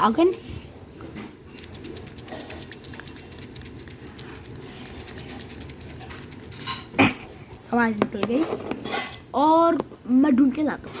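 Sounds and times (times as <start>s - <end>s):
medicine container clicking: 1.6s - 6.8s.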